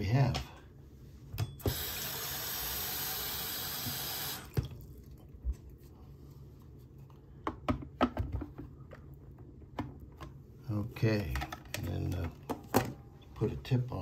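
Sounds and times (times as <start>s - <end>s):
tap water running: 1.7s - 5.3s.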